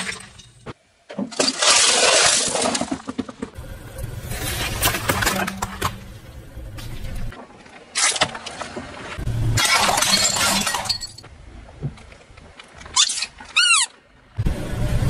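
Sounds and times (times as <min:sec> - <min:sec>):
low engine rumble: 0:03.6 - 0:07.4.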